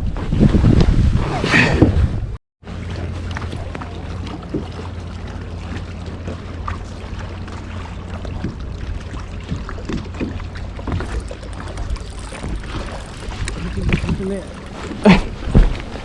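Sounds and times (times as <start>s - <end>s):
wind on microphone: 0.0s - 2.3s
water lapping against boat hull: 3.2s - 16.0s
low steady hum: 11.0s - 15.4s.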